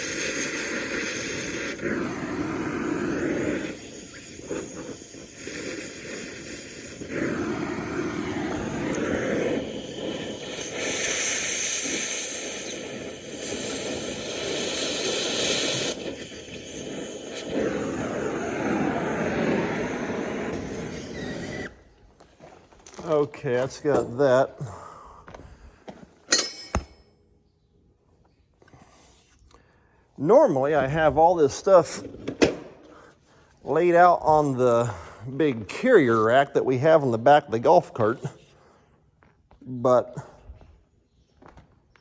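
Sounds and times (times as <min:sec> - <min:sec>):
cutting torch hissing flame: 0:00.0 - 0:21.8.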